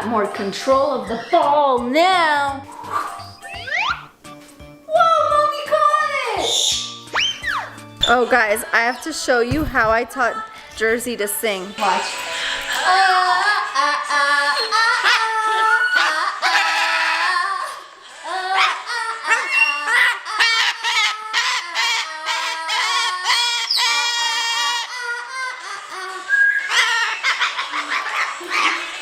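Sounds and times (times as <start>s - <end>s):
music playing: 0.0s - 14.1s
parrot singing warbling notes: 2.9s - 4.2s, 6.4s - 8.3s.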